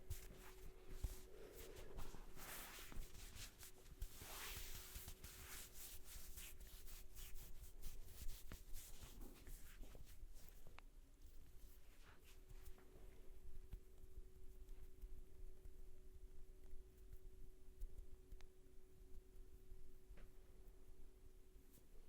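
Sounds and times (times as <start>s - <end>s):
hands rubbing hair: 0.0s - 10.7s.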